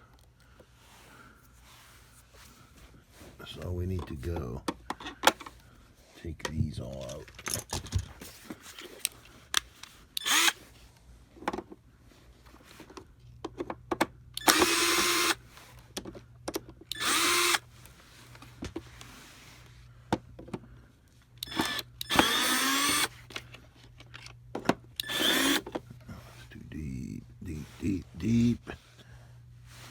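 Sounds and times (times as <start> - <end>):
cordless drill spinning: 10.2 - 10.6, 14.4 - 15.5, 16.9 - 17.7, 21.4 - 23.3, 25.0 - 25.7.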